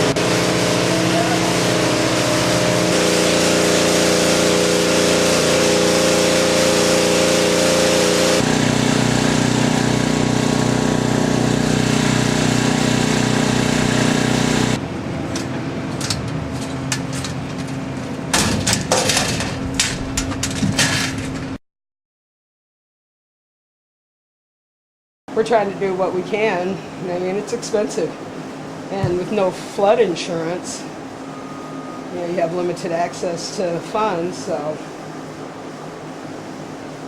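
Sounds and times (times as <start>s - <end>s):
engine-driven machinery running: 0.0s - 21.6s
clattering and sharp knocks: 18.3s - 21.6s.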